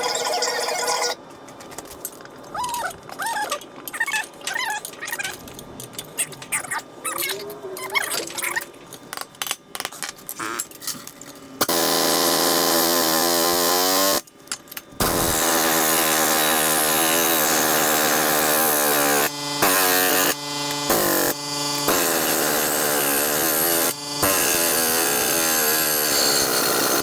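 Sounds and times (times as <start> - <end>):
power tool running: 11.6 - 14.3, 15.0 - 27.0.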